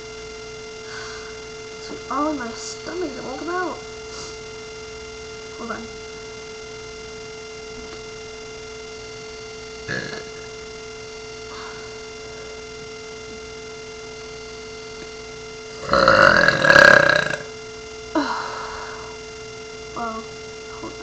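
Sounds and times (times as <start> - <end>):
electrical hum: 0.0 - 21.0
person burping: 9.9 - 10.4, 15.8 - 17.5.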